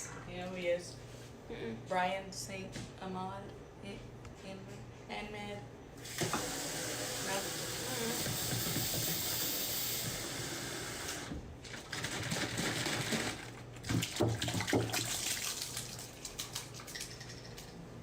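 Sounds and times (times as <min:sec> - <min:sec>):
tap water running into sink: 0:07.4 - 0:10.4, 0:12.2 - 0:17.4.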